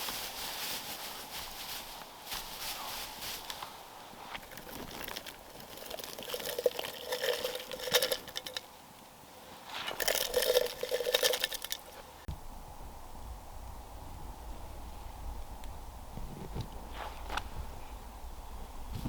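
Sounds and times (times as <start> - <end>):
steady low background noise: 0.0 - 19.0
liquid pouring: 4.5 - 8.6, 9.9 - 12.0.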